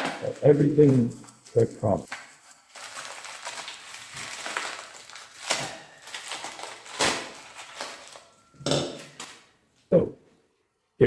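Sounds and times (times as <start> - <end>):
packaging crinkling: 0.0 - 9.6
sharp packaging cracks: 2.1 - 9.5.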